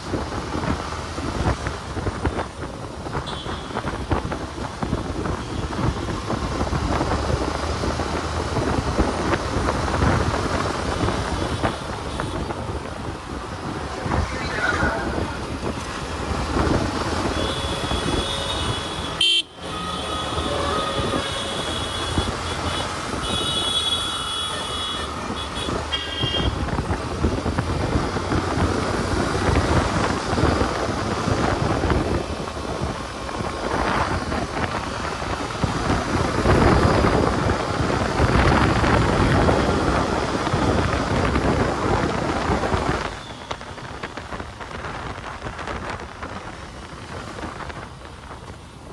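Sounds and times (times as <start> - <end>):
road traffic rumble: 0.0 - 48.9
vehicle horns honking: 3.2 - 4.0, 17.2 - 26.6.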